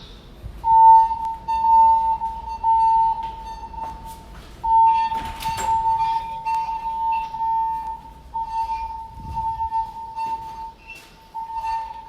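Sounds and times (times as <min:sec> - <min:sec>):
fire alarm beeping: 0:00.6 - 0:12.0.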